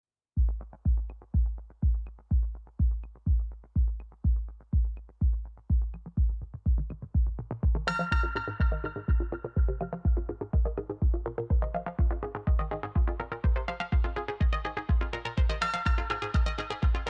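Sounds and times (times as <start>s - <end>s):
drum machine kick thumping: 0.4s - 17.0s
bright synthesizer chords: 5.7s - 17.0s.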